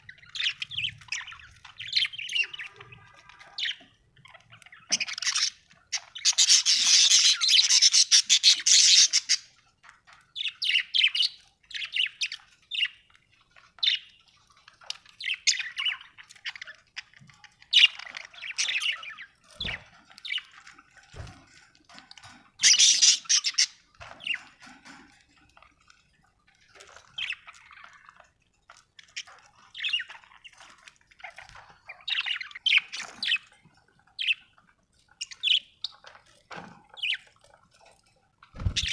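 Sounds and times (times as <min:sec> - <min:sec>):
budgerigar chirping and chattering: 0:00.2 - 0:09.5, 0:22.6 - 0:24.4.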